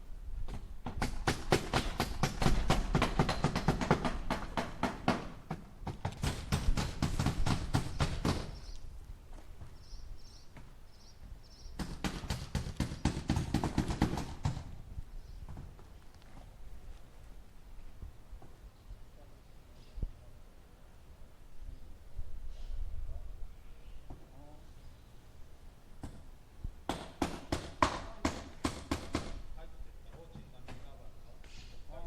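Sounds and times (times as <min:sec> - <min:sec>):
hammer driving nails into wood: 0:00.5 - 0:08.6, 0:11.8 - 0:14.7, 0:26.9 - 0:29.4.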